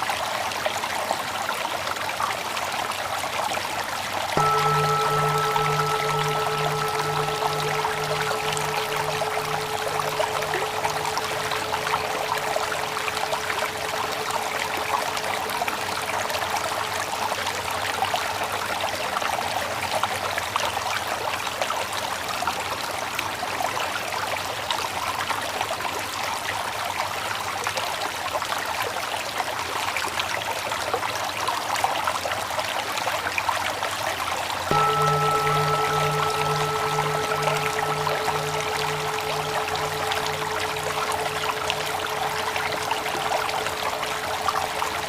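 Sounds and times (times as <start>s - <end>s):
bell ringing tone: 4.4s - 17.4s, 34.7s - 45.0s
stream trickling: 4.4s - 17.9s, 34.7s - 45.0s.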